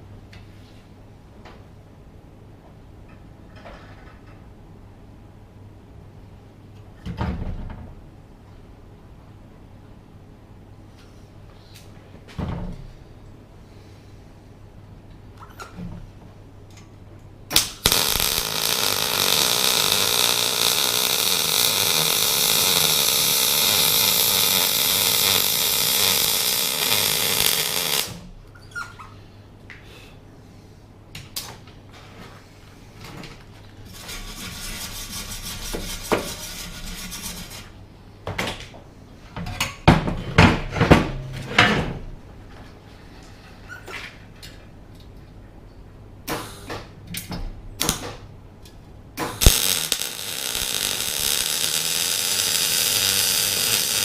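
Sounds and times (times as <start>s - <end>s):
loud steady metalworking noise: 17.9s - 28.2s, 49.4s - 54.0s.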